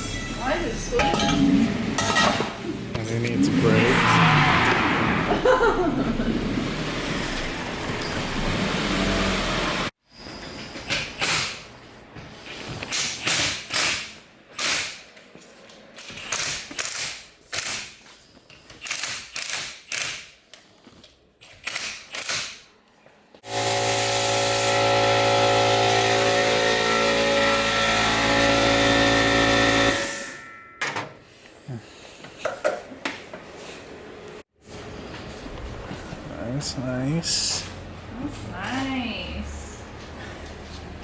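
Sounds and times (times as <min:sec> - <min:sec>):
power tool running: 0:23.4 - 0:30.2.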